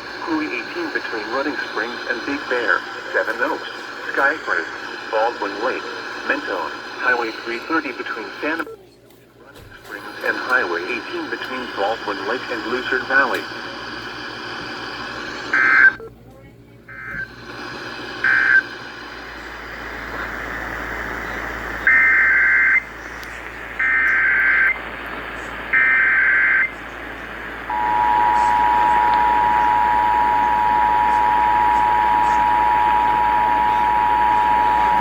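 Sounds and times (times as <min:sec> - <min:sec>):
radio hiss: 0:00.0 - 0:08.7, 0:09.4 - 0:16.0, 0:16.9 - 0:35.0
two-tone attention signal: 0:27.7 - 0:35.0.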